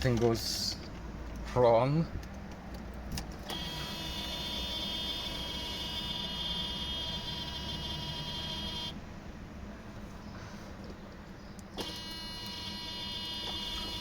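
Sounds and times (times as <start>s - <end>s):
electrical buzz with high whine: 3.5s - 9.1s, 11.8s - 14.0s.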